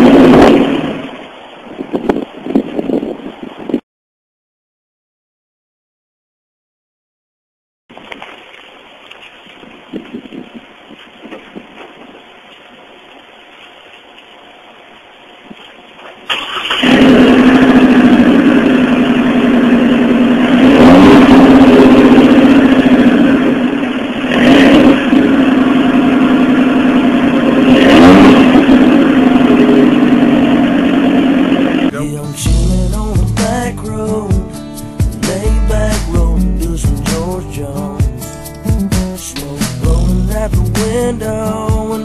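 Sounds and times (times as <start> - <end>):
pickup truck engine idling and revving: 0.0 - 1.5, 16.1 - 31.9, 32.5 - 42.0.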